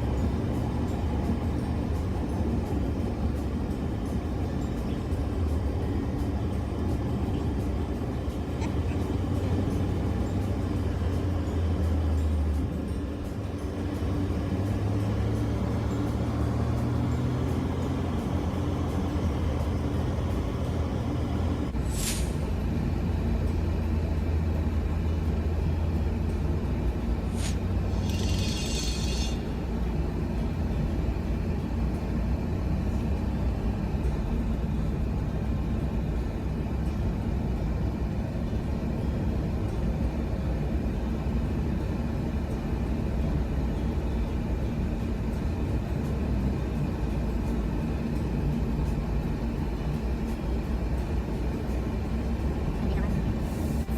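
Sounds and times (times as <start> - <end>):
vehicle engine and road noise: 0.0 - 53.9
brief high hiss: 21.8 - 22.4, 27.3 - 29.4.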